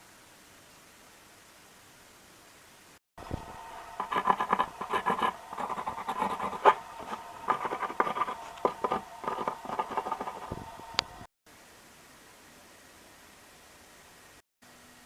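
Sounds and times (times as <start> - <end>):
faint steady hum: 0.0 - 15.0
scratching and rubbing: 4.0 - 10.6.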